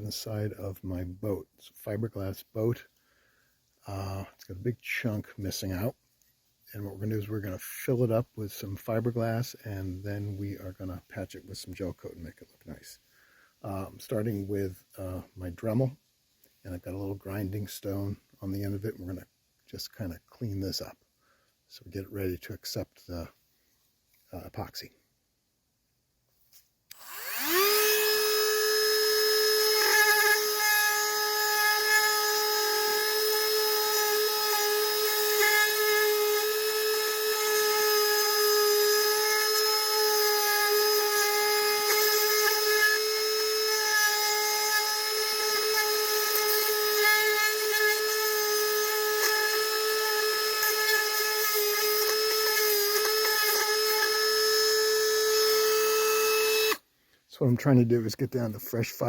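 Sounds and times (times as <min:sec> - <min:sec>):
rotary tool grinding whine: 0:26.9 - 0:56.9.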